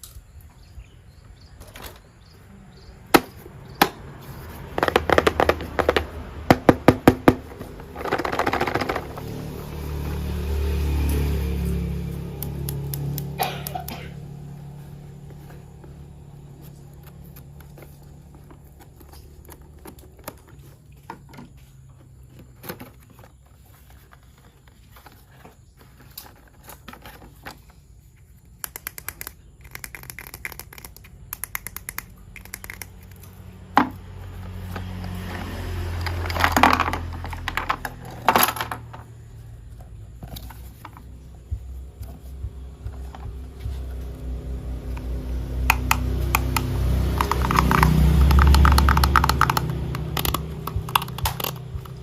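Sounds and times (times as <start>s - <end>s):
plastic toy parts clicking: 28.6s - 33.4s, 45.7s - 52.0s
rustling and knocks: 39.8s - 44.8s
ticking: 40.3s - 52.0s.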